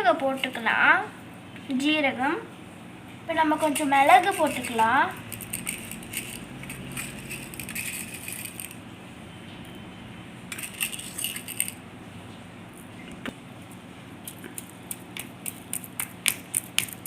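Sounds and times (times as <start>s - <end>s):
peppercorns rattling in small vessel: 3.6s - 8.8s, 10.5s - 11.8s, 14.3s - 17.0s.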